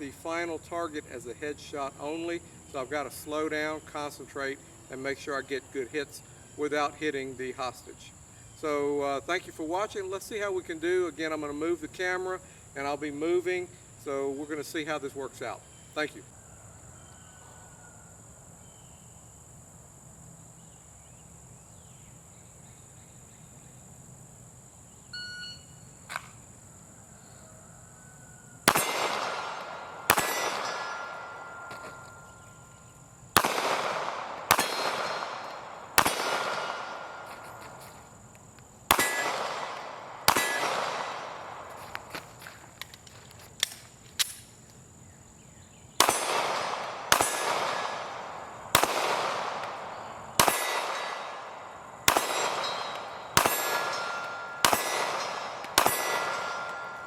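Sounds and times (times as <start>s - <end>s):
crickets chirping: 0.0s - 57.0s
pistol shots: 28.6s - 32.6s, 33.4s - 37.9s, 38.9s - 42.2s, 46.0s - 57.0s
steel targets ringing: 30.1s - 32.6s, 52.2s - 57.0s.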